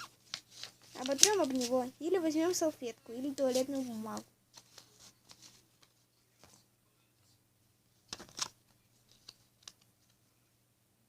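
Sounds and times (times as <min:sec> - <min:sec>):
paper rustling against cardboard: 0:00.0 - 0:01.9, 0:03.2 - 0:06.6.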